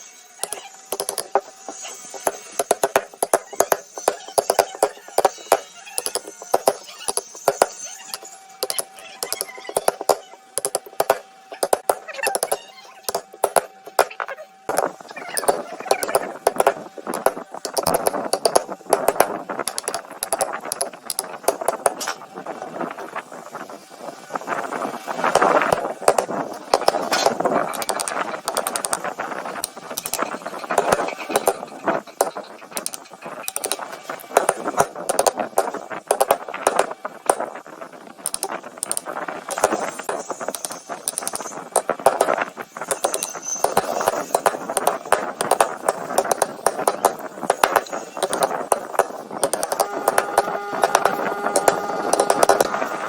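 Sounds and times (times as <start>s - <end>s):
clicks taps and knocks: 0.4s - 22.2s, 25.2s - 37.6s, 38.2s - 52.9s
tools striking wood: 0.4s - 22.2s, 25.2s - 37.5s, 38.2s - 53.0s.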